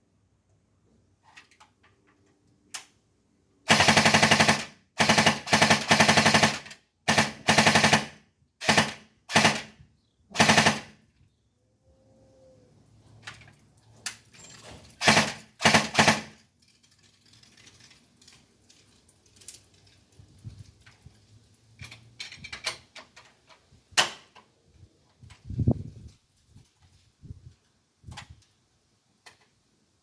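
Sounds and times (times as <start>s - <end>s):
gun handling clicks and rattles: 1.2s - 3.0s, 13.2s - 24.5s, 29.2s - 29.6s
airsoft gun bursts: 3.7s - 11.0s, 15.0s - 16.4s.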